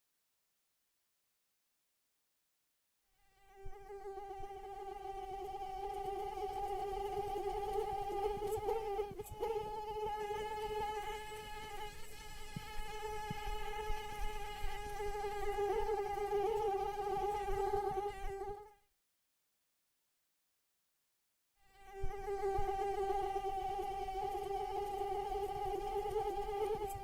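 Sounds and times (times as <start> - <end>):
mosquito wingbeat whine: 3.3 - 18.7, 21.7 - 27.0.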